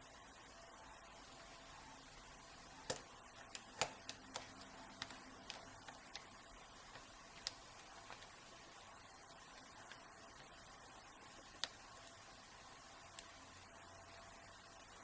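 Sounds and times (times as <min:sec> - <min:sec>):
lock pick clicking: 0:02.9 - 0:06.3.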